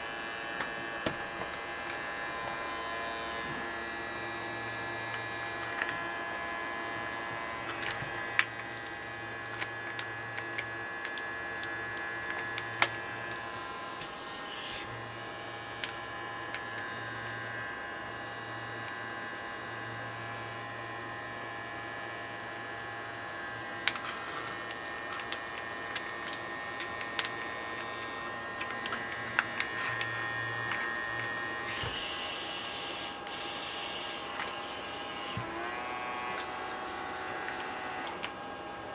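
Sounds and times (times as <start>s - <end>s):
small vacuum pump humming: 0.0s - 38.9s.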